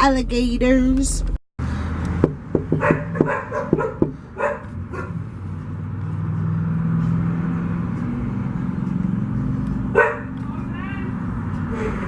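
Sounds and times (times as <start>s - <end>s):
dog yipping: 2.7s - 5.2s, 10.0s - 10.3s.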